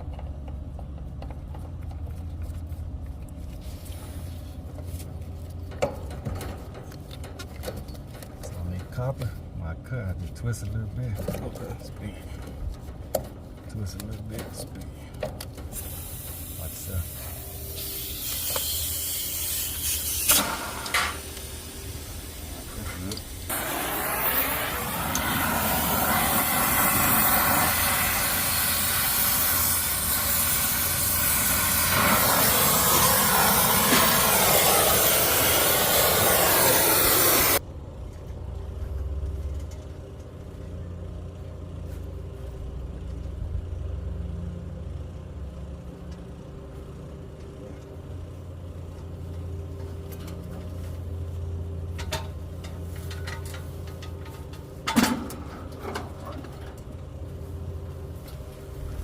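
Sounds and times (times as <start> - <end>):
pressurised gas hissing out: 15.7 - 37.6.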